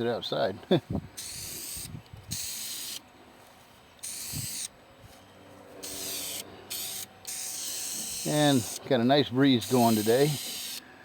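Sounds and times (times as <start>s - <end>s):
spray paint can hissing: 1.2s - 3.0s, 4.0s - 4.7s, 5.8s - 8.8s, 9.6s - 10.8s.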